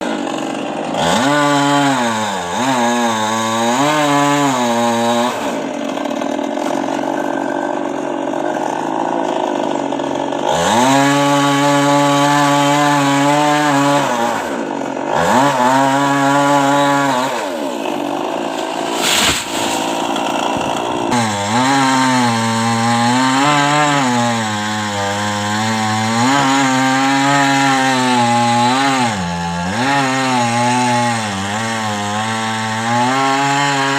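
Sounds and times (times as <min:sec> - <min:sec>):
chainsaw cutting wood: 0:00.0 - 0:33.9
sharp crack: 0:18.4 - 0:20.9.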